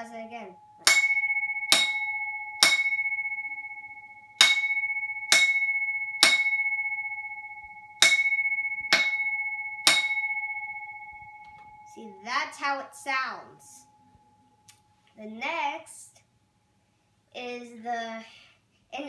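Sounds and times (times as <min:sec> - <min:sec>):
fire alarm bell strokes: 0:00.0 - 0:12.2.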